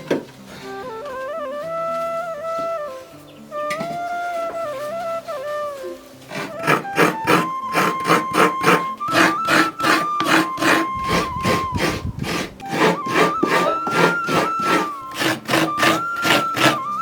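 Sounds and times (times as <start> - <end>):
flute melody: 0.0 - 17.0
rhythmic scraping strokes: 6.2 - 17.0.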